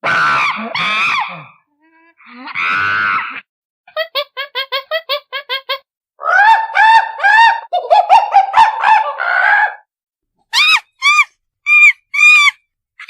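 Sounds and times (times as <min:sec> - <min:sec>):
monkey calling: 0:10.6 - 0:12.6.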